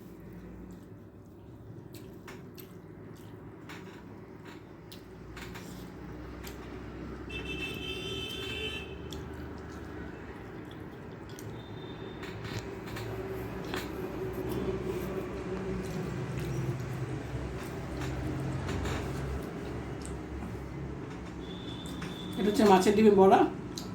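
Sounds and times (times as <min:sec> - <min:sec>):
wet chewing smacks: 0:00.1 - 0:03.6, 0:09.0 - 0:11.9, 0:12.5 - 0:20.6.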